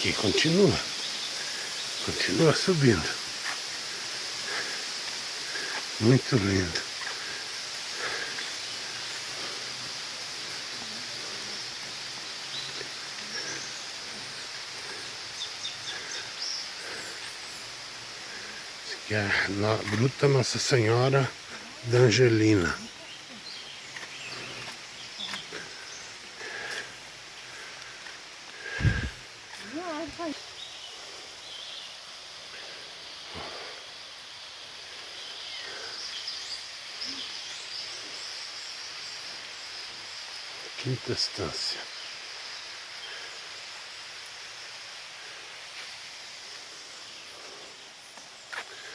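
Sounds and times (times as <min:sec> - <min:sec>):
steady outdoor hiss: 0:00.0 - 0:48.9.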